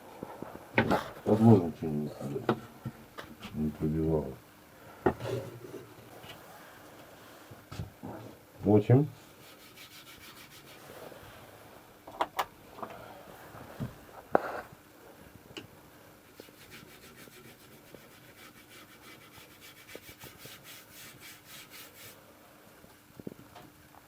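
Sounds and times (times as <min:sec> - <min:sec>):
wooden stick rubbing on board: 0:09.4 - 0:11.1, 0:16.4 - 0:22.2.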